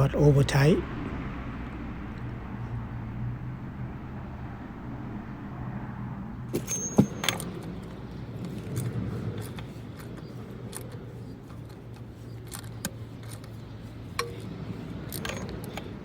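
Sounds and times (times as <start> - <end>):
sharp metallic knock: 6.5 - 7.5.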